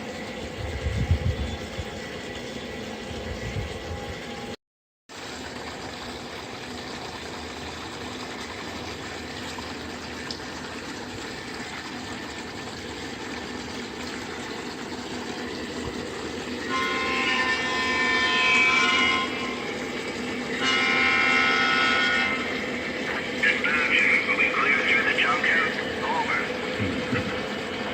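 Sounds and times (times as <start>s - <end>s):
model train motor hum: 15.9s - 27.9s
model train horn: 16.6s - 22.6s.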